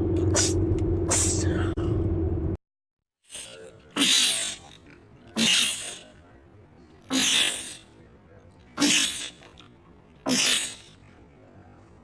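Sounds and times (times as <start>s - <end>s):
person sneezing: 0.4s - 1.7s, 3.3s - 4.7s, 5.4s - 6.1s, 7.1s - 7.8s, 8.8s - 9.4s, 10.3s - 10.9s.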